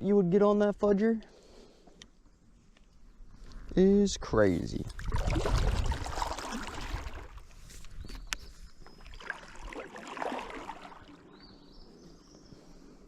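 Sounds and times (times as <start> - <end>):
water lapping against boat hull: 4.8 - 7.6, 8.8 - 11.4.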